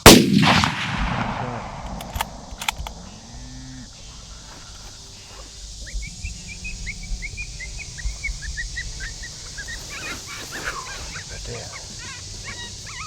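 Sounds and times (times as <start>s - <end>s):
steady high hiss: 0.0s - 13.0s
high animal chirps: 5.8s - 13.0s.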